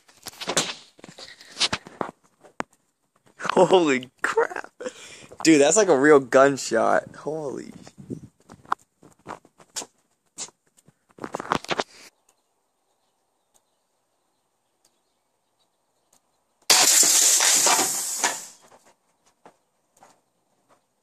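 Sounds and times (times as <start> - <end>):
air duster can bursting: 16.7 - 18.7
hiss of escaping gas: 16.7 - 18.7.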